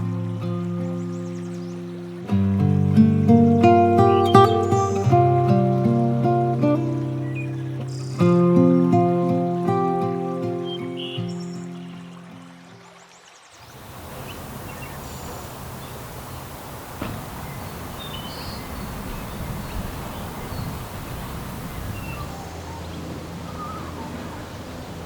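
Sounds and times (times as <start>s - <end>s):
high bird chirps: 3.9s - 5.6s, 10.6s - 12.3s, 14.2s - 22.8s
steady rushing noise: 13.7s - 25.0s.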